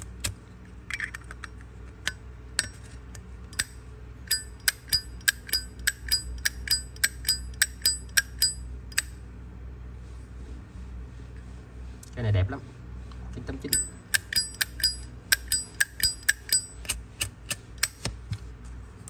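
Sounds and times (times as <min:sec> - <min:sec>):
ringing metallic clinks: 0:04.3 - 0:09.1, 0:13.7 - 0:17.0
handling clicks: 0:13.7 - 0:18.5.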